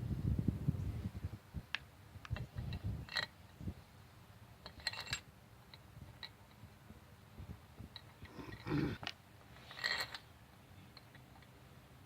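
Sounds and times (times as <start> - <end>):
metal bolts clinking: 4.6 - 6.4, 9.7 - 10.3.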